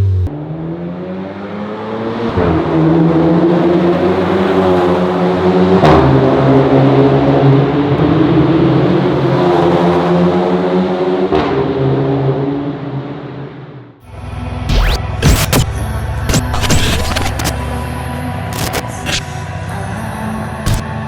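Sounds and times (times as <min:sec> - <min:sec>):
car engine accelerating hard: 0:00.0 - 0:13.2.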